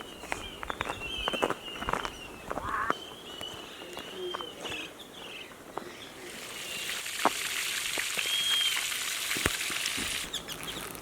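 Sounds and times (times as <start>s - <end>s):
whistled bird call: 8.1s - 9.0s.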